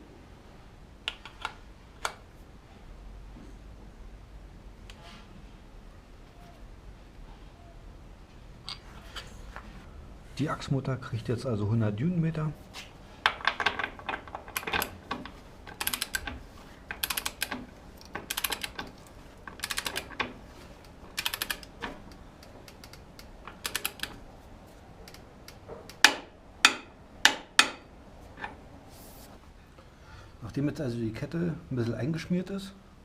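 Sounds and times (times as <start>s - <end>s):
ratchet wrench clicking: 14.5s - 20.3s, 21.1s - 21.8s, 22.4s - 24.2s.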